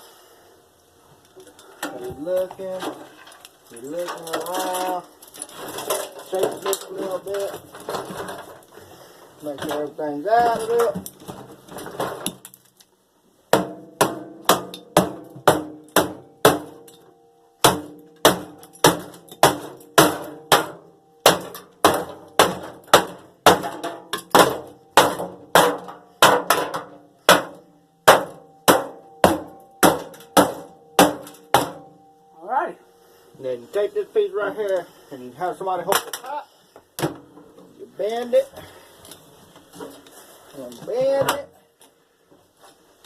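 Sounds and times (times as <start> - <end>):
hammer striking metal: 13.6 - 17.0, 17.6 - 32.1.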